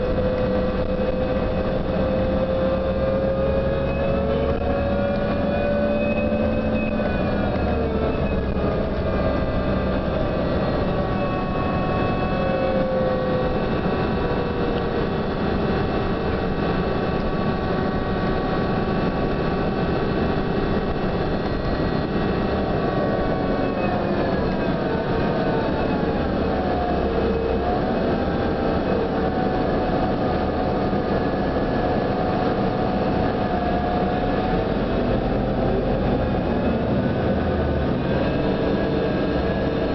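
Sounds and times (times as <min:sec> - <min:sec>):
bus rumble: 0:00.0 - 0:39.9.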